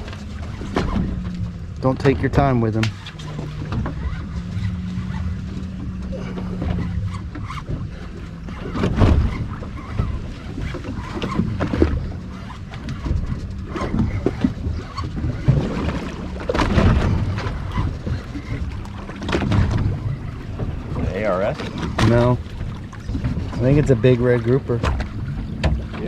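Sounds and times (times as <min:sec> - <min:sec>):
water noise: 0:00.0 - 0:26.0
wind: 0:00.0 - 0:26.0
knocks on boat: 0:08.5 - 0:26.0.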